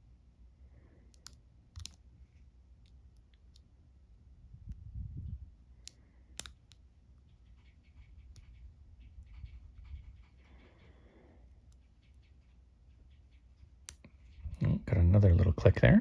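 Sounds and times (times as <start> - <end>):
lock pick clicking and scraping: 1.2 - 2.0.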